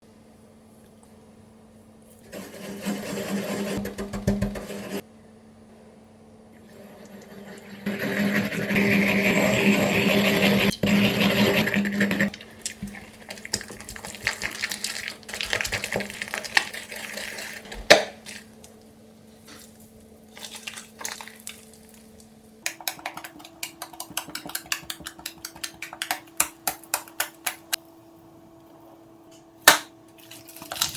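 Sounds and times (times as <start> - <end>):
slime mixing rush: 7.8 - 18.6, 20.3 - 27.8
stirring scrapes and clicks: 19.5 - 27.8.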